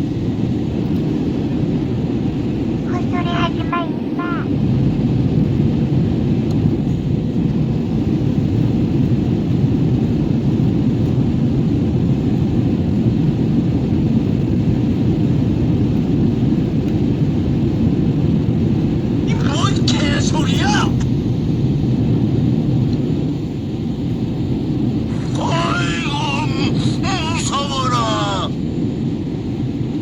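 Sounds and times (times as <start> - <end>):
airliner cabin rumble: 25.0 - 28.6.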